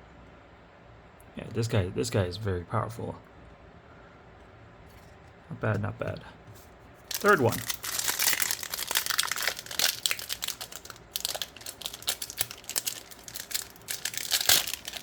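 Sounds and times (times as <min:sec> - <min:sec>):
foil wrapper crinkling and tearing: 0:07.0 - 0:15.0.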